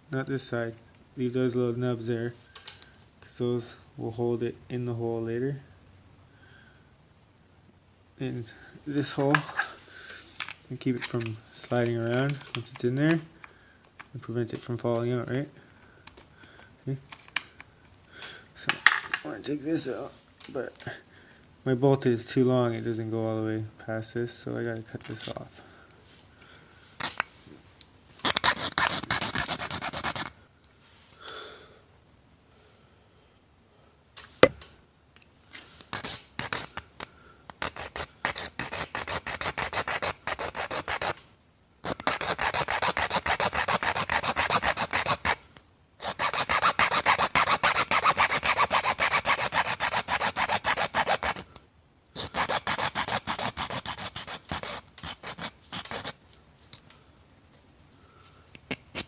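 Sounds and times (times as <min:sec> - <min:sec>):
saw cutting metal bolt: 0:46.0 - 0:51.4, 0:52.2 - 0:56.1.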